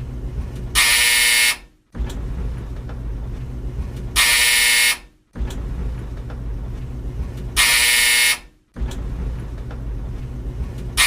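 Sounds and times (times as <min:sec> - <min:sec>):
dryer running rumble: 0:00.0 - 0:11.0
tumble dryer buzzer: 0:00.7 - 0:01.7, 0:04.1 - 0:05.1, 0:07.6 - 0:08.5.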